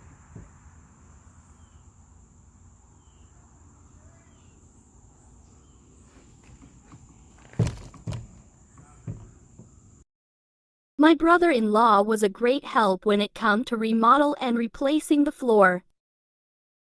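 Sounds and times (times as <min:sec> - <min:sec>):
faint high whine: 0:00.0 - 0:10.0
quiet footsteps scuffing: 0:05.4 - 0:09.9
heavy thudding steps: 0:05.4 - 0:10.0.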